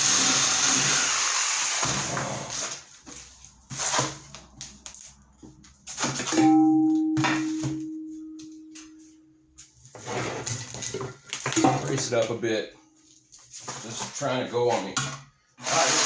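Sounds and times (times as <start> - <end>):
metal clang ringing: 6.3 - 8.8, 11.6 - 12.2
reciprocating saw stopping: 15.6 - 16.0.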